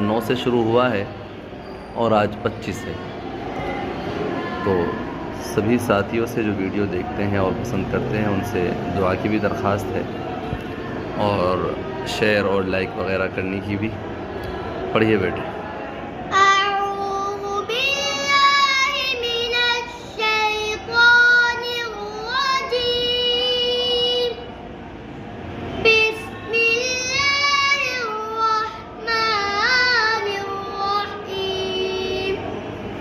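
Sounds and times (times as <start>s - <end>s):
boy chanting melodically: 16.3s - 24.6s, 25.8s - 32.6s.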